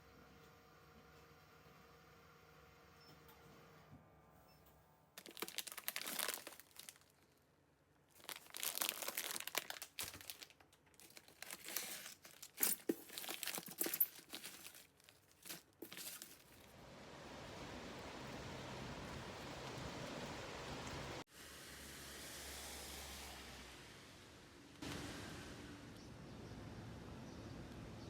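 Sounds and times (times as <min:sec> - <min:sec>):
packaging crinkling and tearing: 0:05.2 - 0:07.4, 0:08.1 - 0:16.7.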